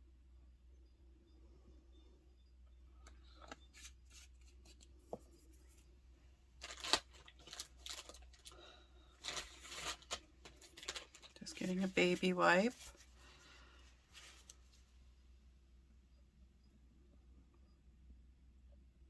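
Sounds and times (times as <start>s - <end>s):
rustling and scraping: 3.2s - 6.0s, 6.6s - 15.0s.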